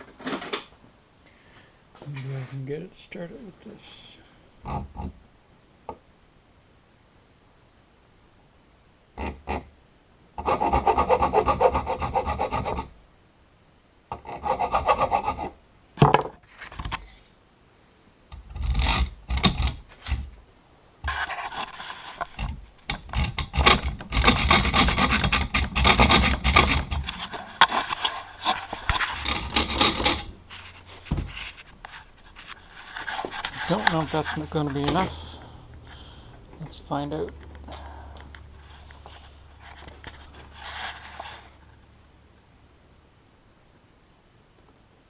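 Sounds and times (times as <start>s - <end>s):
file rasping on brass: 10.4s - 12.9s, 14.1s - 15.6s, 21.1s - 35.1s.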